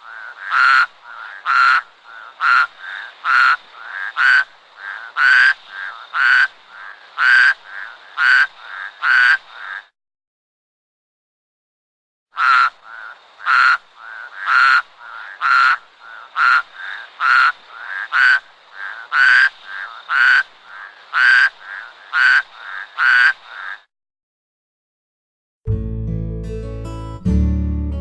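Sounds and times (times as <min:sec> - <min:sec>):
toad croaking: 0:00.0 - 0:09.9, 0:12.3 - 0:23.9.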